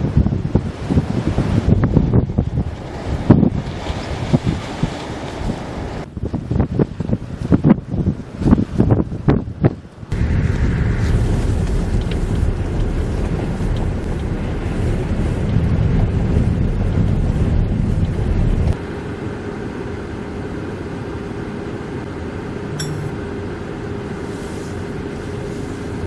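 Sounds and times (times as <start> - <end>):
blizzard wind buffeting microphone: 0.0 - 26.0
steady drone with faint tone: 18.8 - 24.3.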